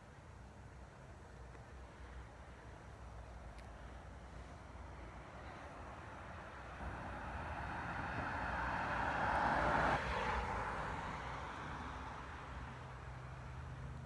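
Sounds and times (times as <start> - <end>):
vehicle passing by: 6.0 - 14.0.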